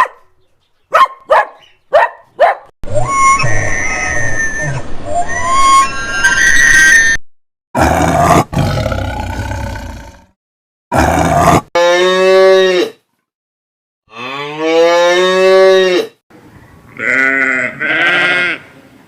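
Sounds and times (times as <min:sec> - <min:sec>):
cow mooing: 0:14.1 - 0:16.1.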